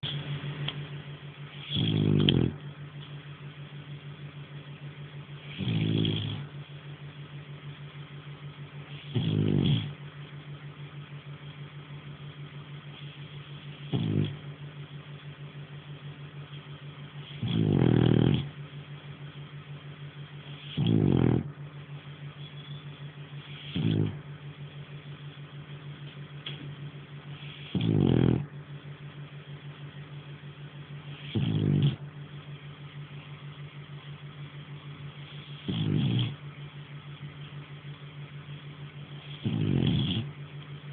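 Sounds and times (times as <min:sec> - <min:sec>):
dog snoring: 0:01.5 - 0:02.7, 0:05.4 - 0:06.7, 0:08.8 - 0:10.1, 0:13.0 - 0:14.6, 0:17.2 - 0:18.7, 0:20.4 - 0:21.7, 0:23.4 - 0:24.4, 0:27.3 - 0:28.6, 0:31.0 - 0:32.1, 0:35.2 - 0:36.5, 0:39.1 - 0:40.4.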